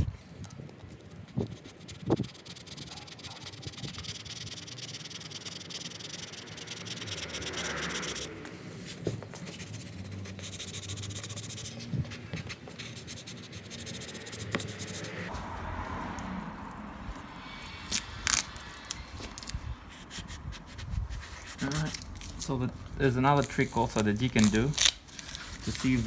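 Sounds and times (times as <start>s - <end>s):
plastic squeegee scraping glass: 23.3s - 26.0s.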